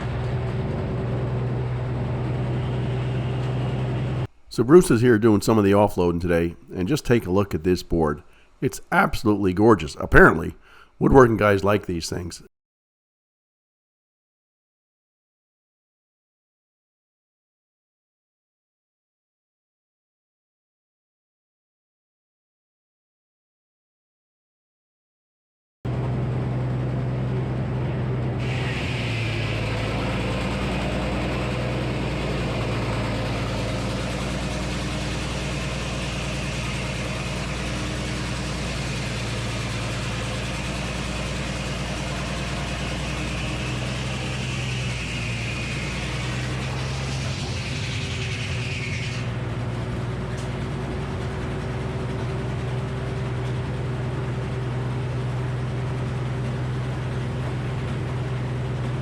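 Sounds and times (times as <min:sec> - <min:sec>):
sawmill engine drone: 0:00.0 - 0:12.4, 0:25.9 - 0:59.0
saw blade singing through log: 0:42.9 - 0:49.3.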